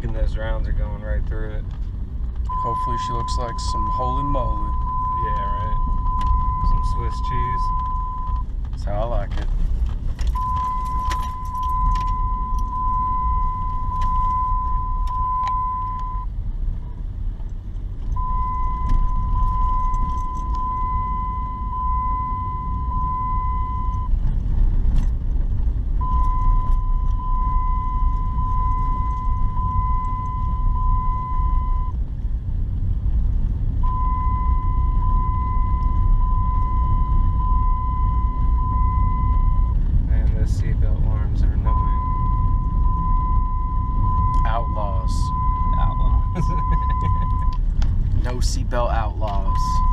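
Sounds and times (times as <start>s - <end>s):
vehicle driving rumble: 0.0s - 49.9s
seatbelt warning chime beeping: 2.5s - 8.5s, 10.3s - 16.3s, 18.1s - 24.2s, 26.0s - 31.9s, 33.8s - 47.6s, 48.2s - 49.9s.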